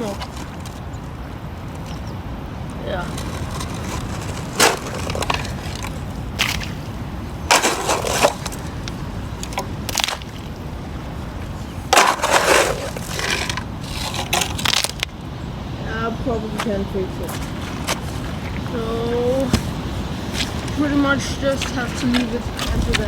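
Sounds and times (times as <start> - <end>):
shovel scraping into mud: 3.1 - 8.8, 11.9 - 15.0.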